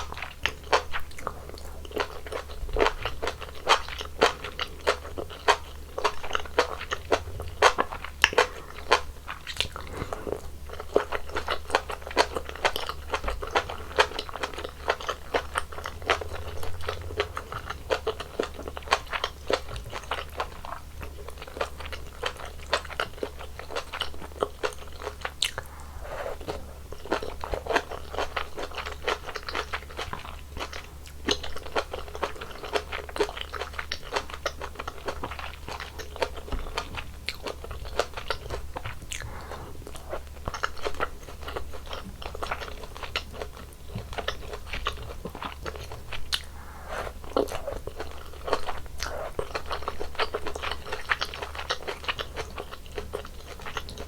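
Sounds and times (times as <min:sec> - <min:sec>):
wet chewing and crunching: 0:00.0 - 0:54.0.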